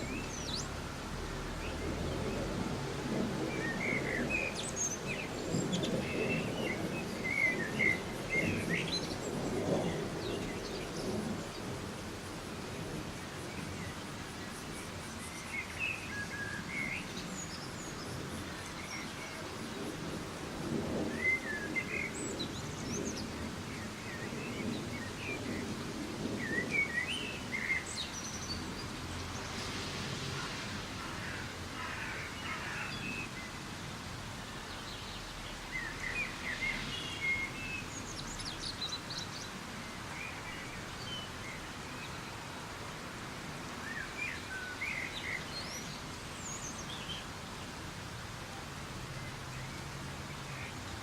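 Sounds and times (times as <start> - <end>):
thunder rumble: 0.0 - 14.9, 19.1 - 31.6
steady rain hiss: 0.0 - 51.0.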